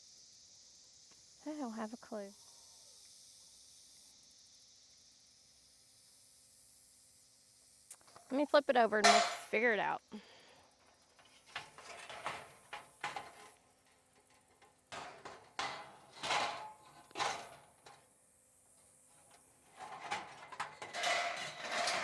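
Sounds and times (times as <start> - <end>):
parts knocking and clattering: 9.0 - 9.6, 10.8 - 18.0, 19.1 - 22.0
rustling and scraping: 10.8 - 18.1, 18.8 - 22.0.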